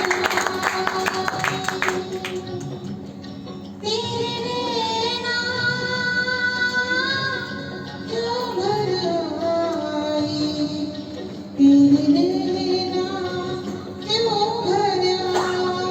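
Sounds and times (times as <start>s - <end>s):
woman singing slow melody: 0.0s - 2.8s, 3.8s - 15.9s
hand claps: 0.0s - 2.9s.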